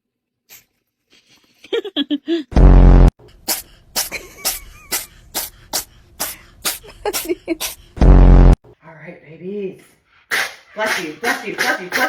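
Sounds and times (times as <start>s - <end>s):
cat sneezing: 0.5s - 0.7s.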